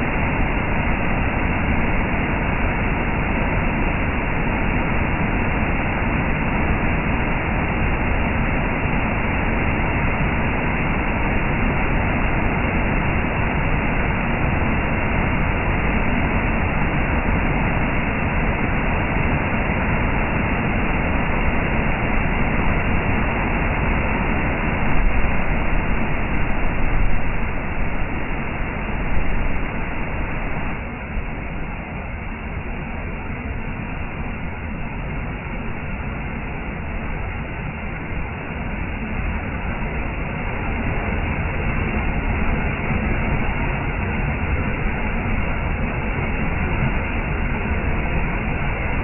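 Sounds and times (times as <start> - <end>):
waterfall roaring: 15.3 - 49.0.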